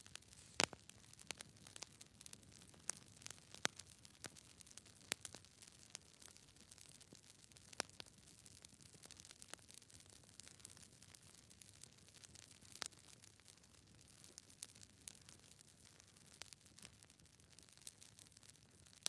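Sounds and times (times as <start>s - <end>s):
low hiss: 0.0s - 0.8s
faint irregular clicks and crackles: 0.0s - 19.0s.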